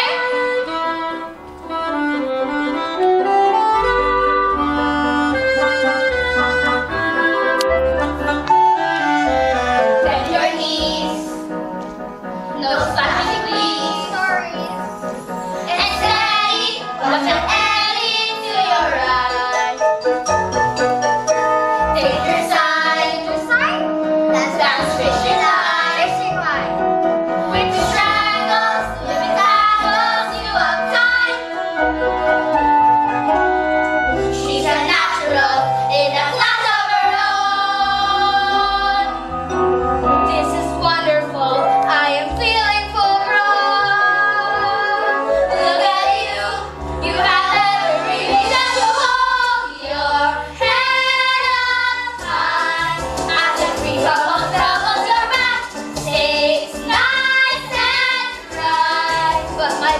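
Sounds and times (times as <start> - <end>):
instrumental backing track: 0.0 - 59.9
young female voices singing: 40.4 - 59.9.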